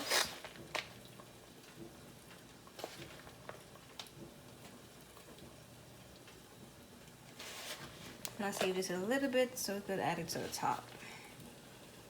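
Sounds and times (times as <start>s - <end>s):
sauce simmering in a pot: 0.0s - 12.0s.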